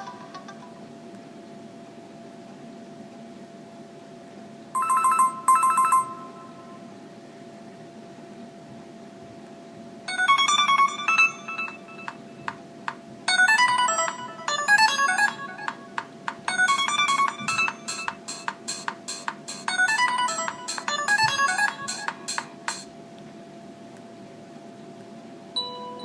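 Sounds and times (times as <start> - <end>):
phone ringtone melody: 4.8 - 6.8, 10.1 - 12.6, 13.3 - 22.9.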